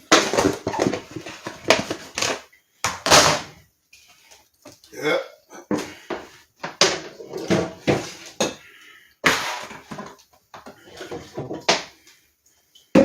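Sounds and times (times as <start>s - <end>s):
dishes and utensils clattering: 0.1s - 2.4s, 5.7s - 12.0s.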